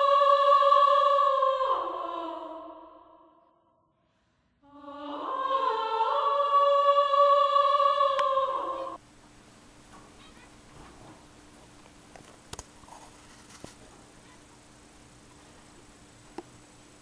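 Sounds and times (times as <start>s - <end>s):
choir-like vocal chords: 0.0s - 9.0s.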